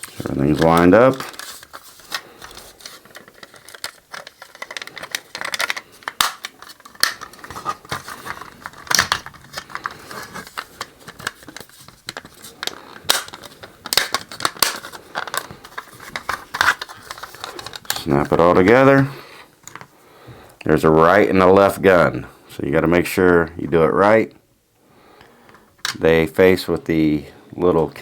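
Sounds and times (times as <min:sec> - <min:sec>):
plastic toy parts clicking and rattling: 0:00.0 - 0:18.1.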